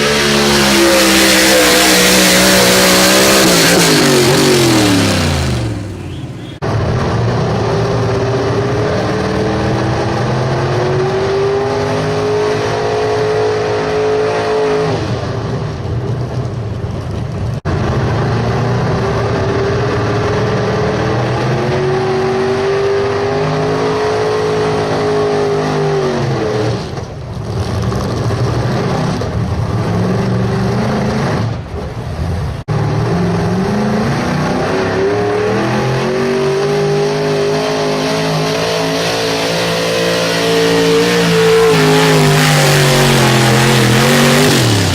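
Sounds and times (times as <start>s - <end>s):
truck engine running flat out: 0.0s - 10.8s.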